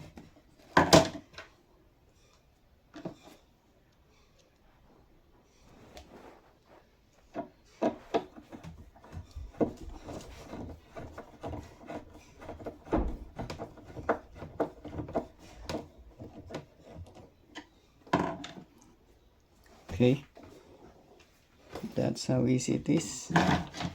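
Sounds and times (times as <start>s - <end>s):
metal scraping against wood: 5.4s - 18.7s, 19.7s - 23.9s.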